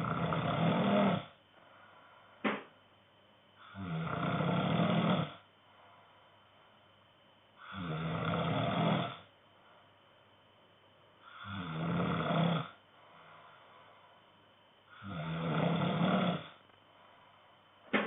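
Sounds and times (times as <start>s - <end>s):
man snoring: 0.0s - 1.4s, 3.6s - 5.4s, 7.6s - 9.3s, 11.2s - 12.8s, 14.9s - 16.6s.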